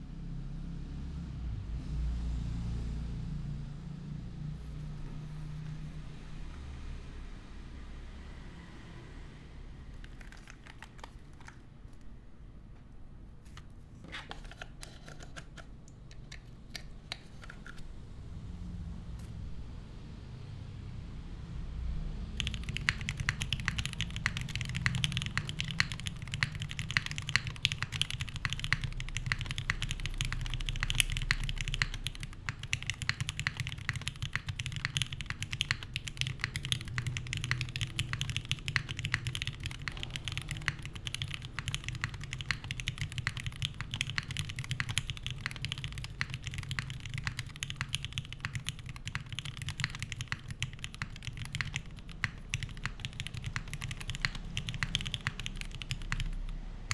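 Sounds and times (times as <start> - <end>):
fast mechanical keyboard typing: 9.9 - 12.1, 22.2 - 56.9.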